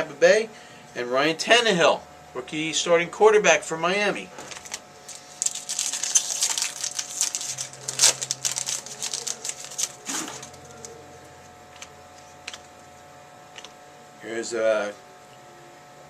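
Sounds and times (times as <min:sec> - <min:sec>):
faint steady hum: 0:00.0 - 0:16.0
cards clicking and rustling: 0:04.5 - 0:11.0, 0:11.7 - 0:12.8.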